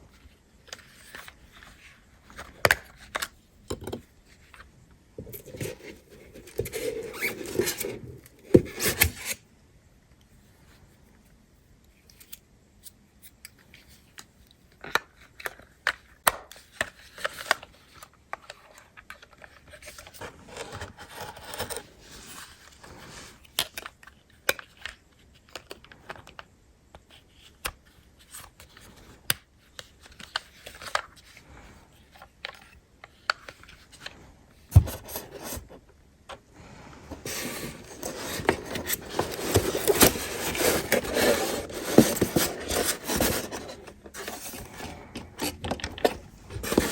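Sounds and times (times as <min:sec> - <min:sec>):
packaging rustling: 0:05.3 - 0:09.3, 0:37.1 - 0:46.9
toy car handling clicks and scrapes: 0:05.3 - 0:09.4, 0:37.1 - 0:46.9.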